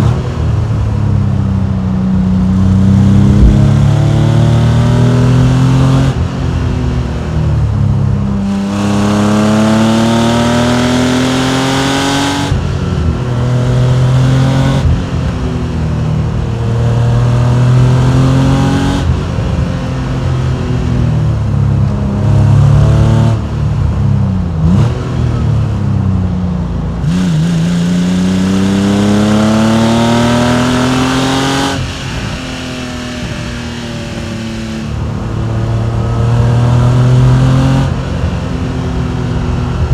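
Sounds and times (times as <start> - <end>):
car engine revving: 1.6 - 7.8, 8.4 - 20.9, 27.0 - 39.9.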